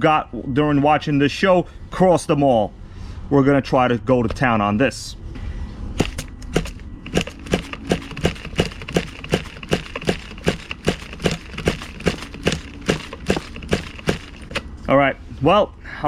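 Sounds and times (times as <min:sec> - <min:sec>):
pull starter clicking: 0:06.0 - 0:14.7.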